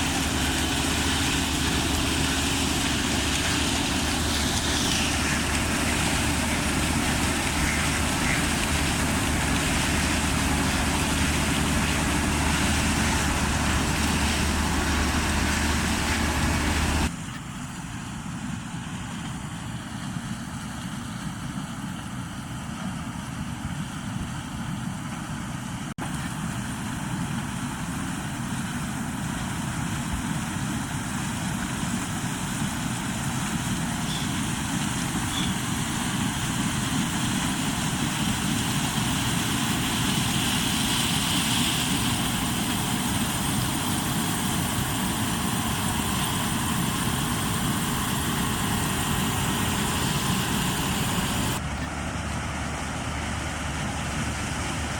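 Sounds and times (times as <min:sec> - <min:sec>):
thin machine noise: 0:00.0 - 0:17.1, 0:32.6 - 0:51.6
combine harvester working: 0:00.0 - 0:54.9.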